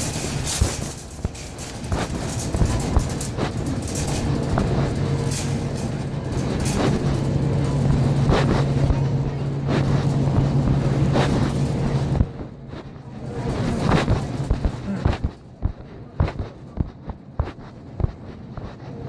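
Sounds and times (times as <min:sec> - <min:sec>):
low hum: 0:00.0 - 0:19.0
microphone rubbing in pocket: 0:13.6 - 0:19.0.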